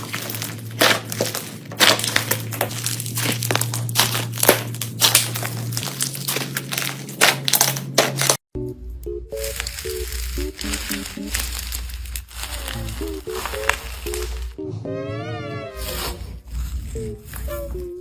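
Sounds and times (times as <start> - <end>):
slime crackling and popping: 0.0 - 8.4, 9.4 - 14.6.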